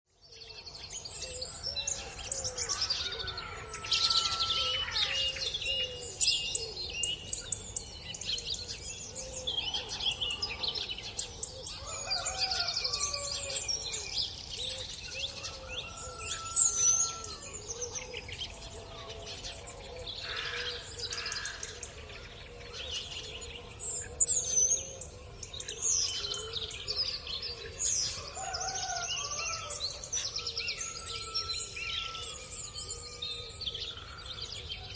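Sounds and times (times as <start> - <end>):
birds chirping and trilling: 0.1 - 34.9.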